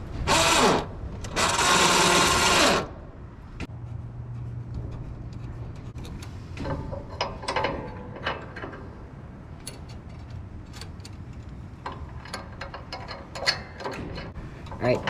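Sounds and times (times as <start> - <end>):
metal hardware clanking: 4.8 - 15.0.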